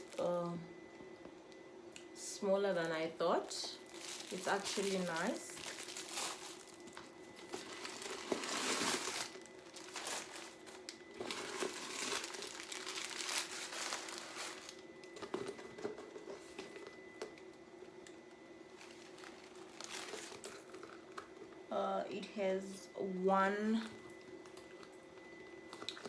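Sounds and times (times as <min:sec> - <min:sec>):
packaging crinkling and rustling: 0:00.0 - 0:00.3, 0:03.4 - 0:21.6, 0:25.6 - 0:26.0.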